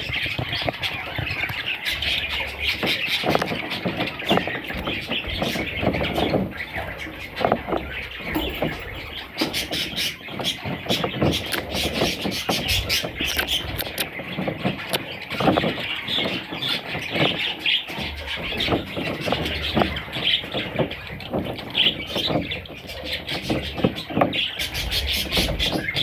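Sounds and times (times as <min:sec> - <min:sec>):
budgerigars chattering and chirping: 0:00.0 - 0:26.0
low rustling: 0:00.4 - 0:17.0.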